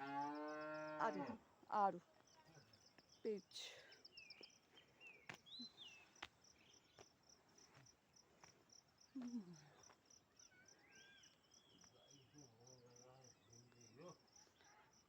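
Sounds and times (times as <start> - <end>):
insect chirping: 0.0 - 1.4.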